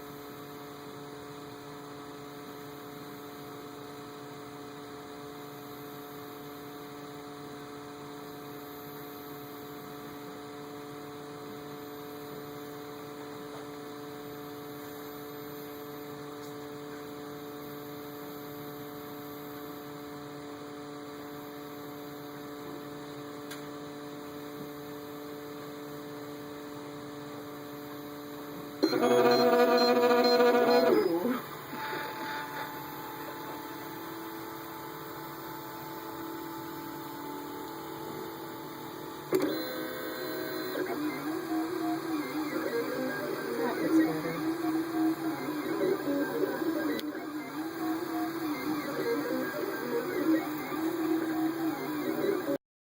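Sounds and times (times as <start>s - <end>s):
steady hum with held tones: 0.0s - 52.6s
loud multi-pitched device sound: 28.8s - 52.6s.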